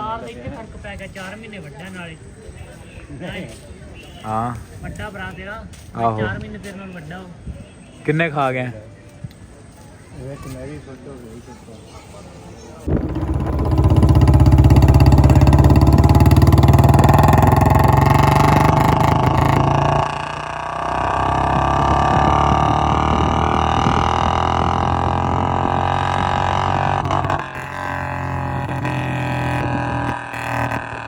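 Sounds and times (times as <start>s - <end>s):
motorcycle engine accelerating: 12.8s - 31.0s.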